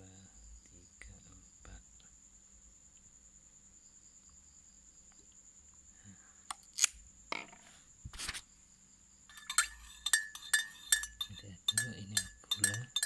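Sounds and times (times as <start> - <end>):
faint steady high tone: 9.3 - 13.0
small objects clicking and knocking: 9.3 - 13.0.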